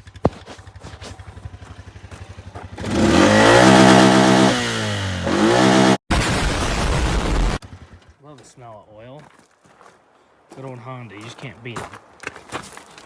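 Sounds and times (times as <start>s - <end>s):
engine idling and revving: 0.0s - 6.0s, 7.0s - 8.1s.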